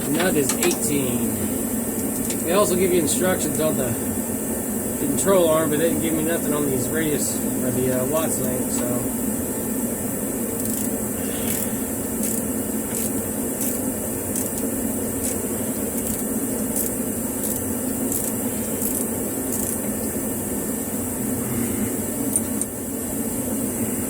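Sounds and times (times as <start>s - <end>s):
steady background hum: 0.0s - 24.0s
ratchet wrench clicking: 10.6s - 15.4s, 16.0s - 19.8s.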